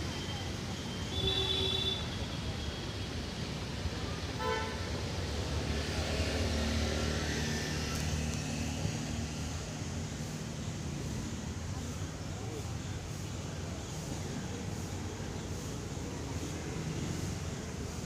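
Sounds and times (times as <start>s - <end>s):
vehicle engine passing: 5.4s - 10.4s.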